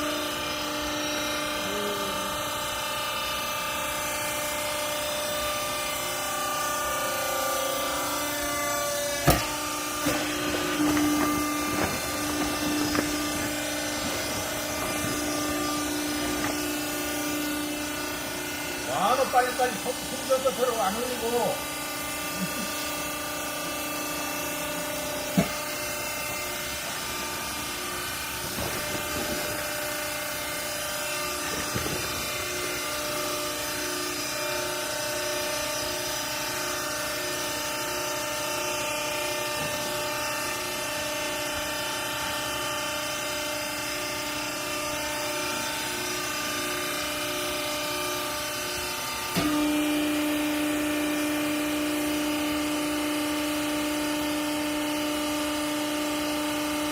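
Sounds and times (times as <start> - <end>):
loud low hum: 0.0 - 4.4, 5.5 - 22.7, 23.6 - 34.8
baler motor and hydraulic pump humming: 0.0 - 56.9.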